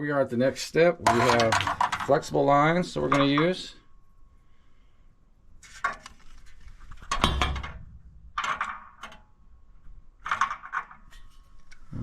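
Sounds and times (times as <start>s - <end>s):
metal parts clinking and rattling: 1.0s - 3.6s, 6.8s - 9.3s, 10.2s - 11.5s.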